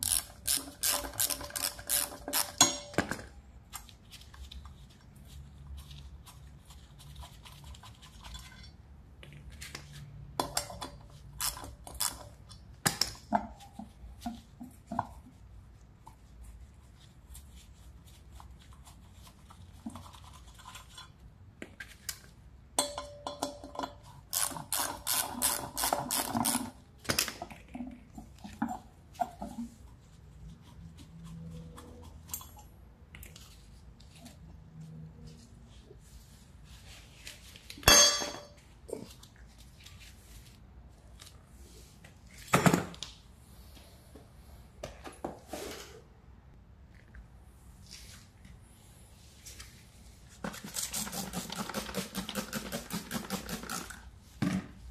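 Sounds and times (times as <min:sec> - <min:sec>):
metal tools clinking and scraping: 0:00.5 - 0:03.3, 0:37.8 - 0:38.7.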